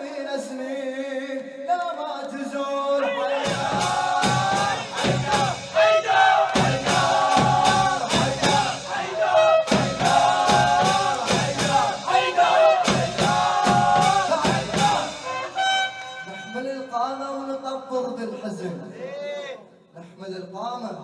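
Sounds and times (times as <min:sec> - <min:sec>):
men chanting in unison: 0:02.6 - 0:15.6
steady drumbeat: 0:03.3 - 0:16.4.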